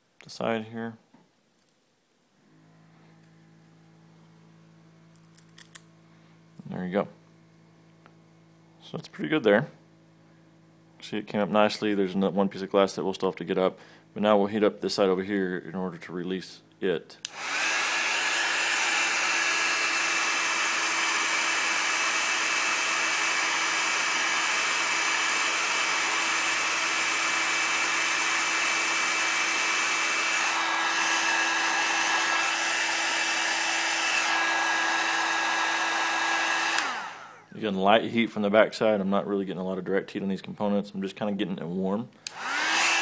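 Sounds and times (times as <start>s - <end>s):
hot-air blower running: 17.2s - 37.6s, 42.2s - 43.0s.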